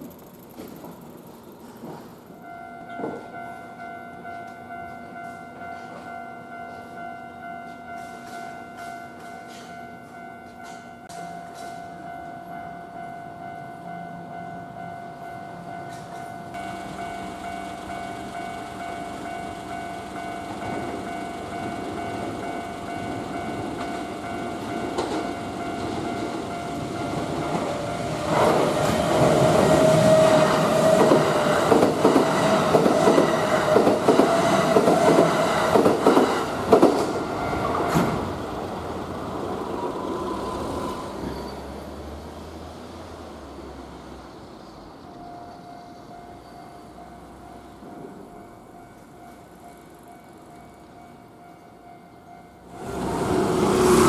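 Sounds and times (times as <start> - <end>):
electric train passing: 0.0 - 54.0
level-crossing alarm ringing: 2.4 - 38.1
wheels clacking over rail joints: 15.9 - 38.4.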